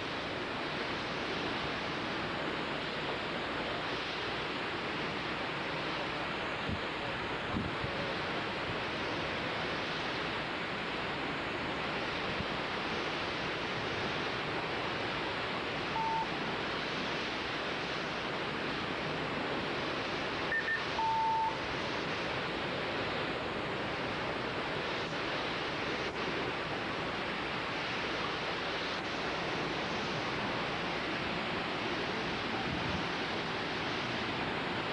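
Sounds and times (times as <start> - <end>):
short electronic beeps: 15.9 - 16.3, 20.5 - 21.6.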